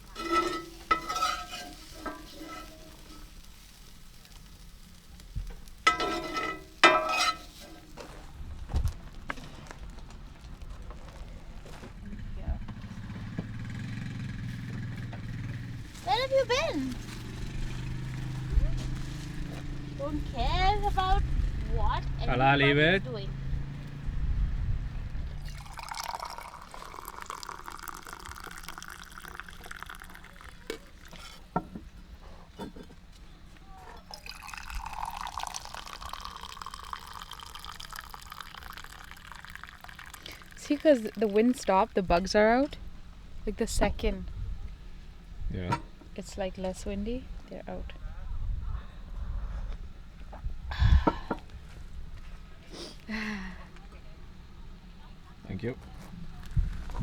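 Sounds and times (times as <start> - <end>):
metal cookware clanging: 0.0 - 8.2
low wind rumble: 8.2 - 25.9, 42.0 - 52.6, 56.1 - 57.0
liquid pouring into a container: 25.4 - 31.5, 34.0 - 41.8.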